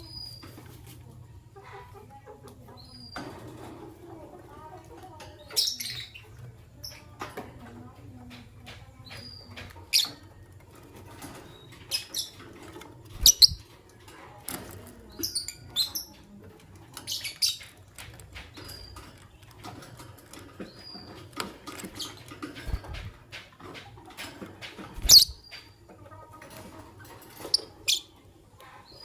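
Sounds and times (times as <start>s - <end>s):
faint clicks and taps: 6.4s - 11.4s
birds chirping: 11.2s - 13.7s, 20.5s - 23.4s, 24.7s - 25.9s.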